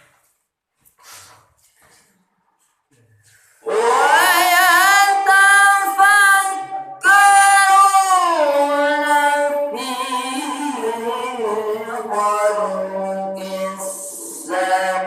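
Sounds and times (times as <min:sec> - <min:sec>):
high voice singing with vibrato: 0:03.6 - 0:15.0.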